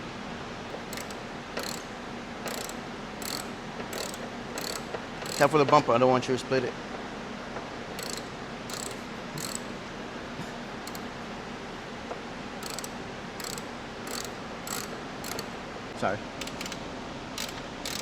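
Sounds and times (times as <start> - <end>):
steady background noise: 0.0 - 18.0
hand ratchet clicking: 0.7 - 5.6, 8.0 - 9.7, 10.9 - 11.1, 12.6 - 15.6, 16.4 - 16.8, 17.4 - 18.0.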